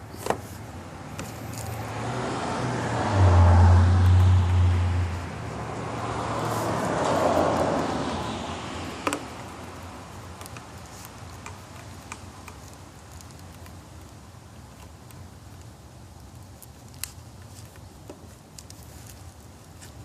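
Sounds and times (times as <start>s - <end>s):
car passing: 0.9s - 10.1s.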